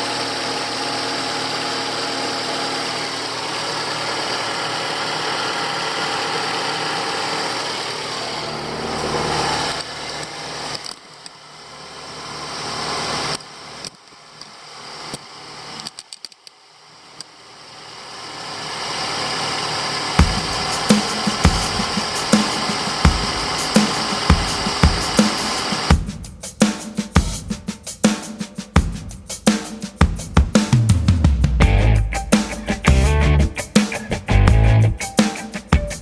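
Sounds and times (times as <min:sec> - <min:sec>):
car engine idling: 0:00.0 - 0:14.6.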